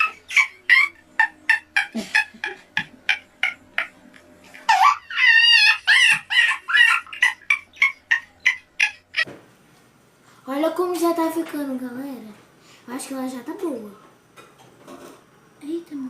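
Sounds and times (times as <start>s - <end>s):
girl laughing: 0.0s - 9.3s.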